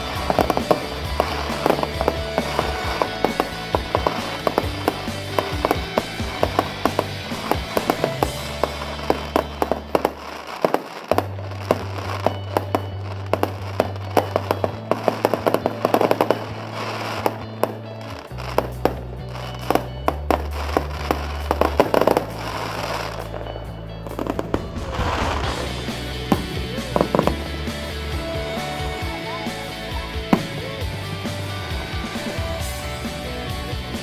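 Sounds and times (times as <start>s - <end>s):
fireworks crackling and banging: 0.0s - 34.0s
music with bass notes: 0.0s - 34.0s.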